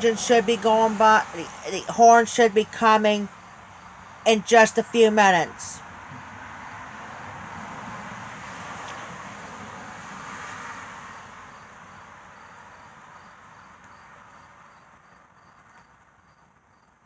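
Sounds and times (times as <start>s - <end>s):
insects chirping: 0.0s - 7.7s, 11.0s - 17.0s
vehicle passing: 0.0s - 14.7s.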